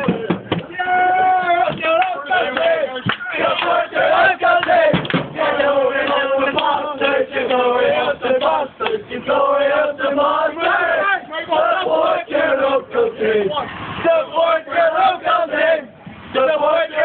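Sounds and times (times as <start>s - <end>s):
men chanting and singing: 0.0s - 17.0s
sharp knocks: 4.9s - 5.4s.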